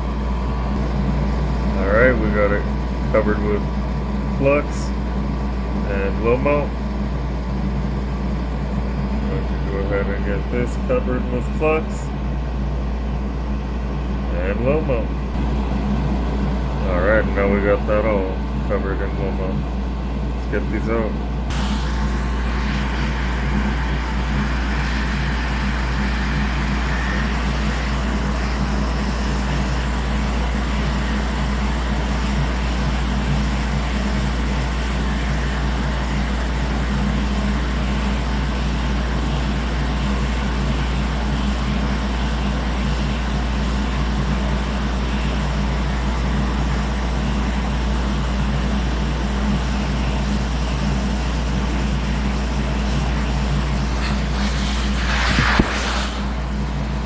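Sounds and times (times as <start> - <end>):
low hum: 0.0 - 38.4
hot-air blower whoosh: 0.0 - 57.0.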